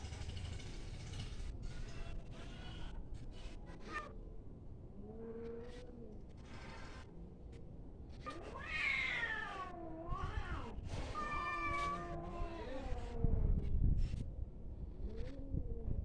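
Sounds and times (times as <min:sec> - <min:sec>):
cats yowling: 0:03.7 - 0:04.2, 0:08.2 - 0:13.5.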